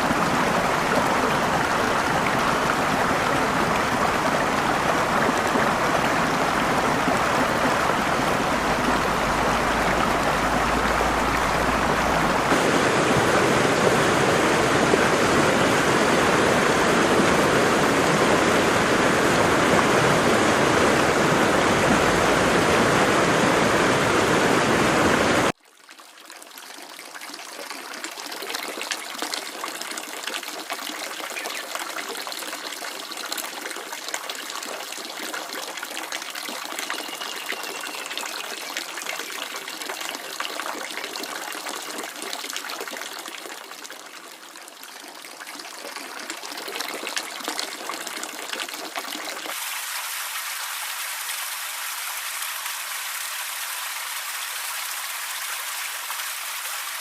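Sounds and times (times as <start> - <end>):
waterfall rushing: 0.0 - 25.6
water splashing and trickling: 0.0 - 57.0.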